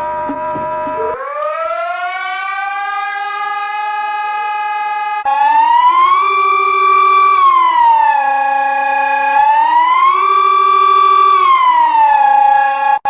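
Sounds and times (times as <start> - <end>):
steady tone with regular clicks: 0.0 - 5.3, 6.2 - 7.6
emergency warning siren wailing: 0.0 - 13.0.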